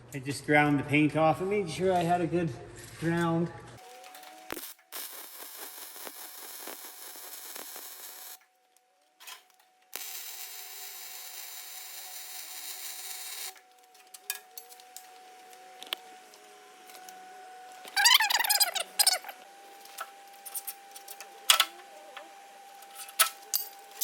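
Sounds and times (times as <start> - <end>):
welding arc sizzling: 3.8 - 8.5, 9.2 - 17.1, 17.8 - 24.0.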